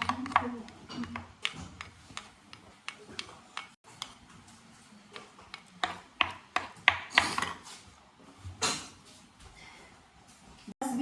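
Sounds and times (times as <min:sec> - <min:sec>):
spoon tapping a dish: 0:00.0 - 0:04.2, 0:05.2 - 0:07.6.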